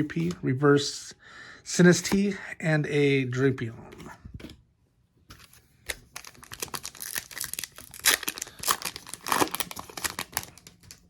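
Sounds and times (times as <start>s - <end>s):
foil wrapper crinkling and tearing: 5.9s - 11.0s.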